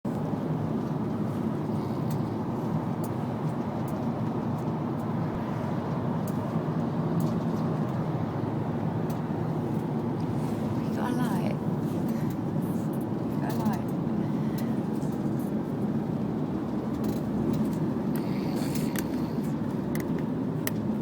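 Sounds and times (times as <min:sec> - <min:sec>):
road and engine rumble in car: 0:00.1 - 0:21.0.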